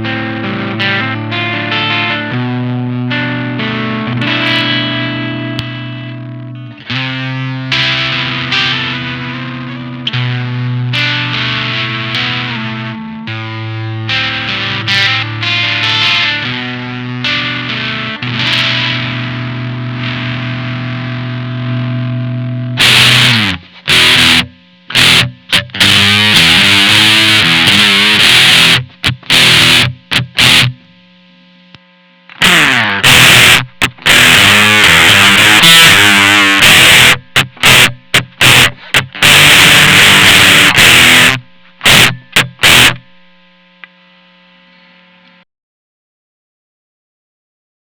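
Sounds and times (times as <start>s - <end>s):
fuzz electric guitar riffs: 0.0s - 44.4s
low steady hum: 28.8s - 33.0s.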